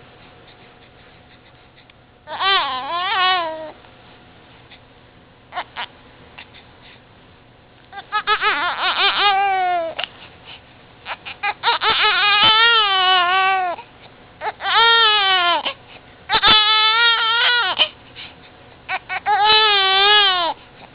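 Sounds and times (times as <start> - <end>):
infant crying: 2.3 - 3.8, 5.5 - 5.9, 7.9 - 10.1, 11.0 - 18.0, 18.9 - 20.6.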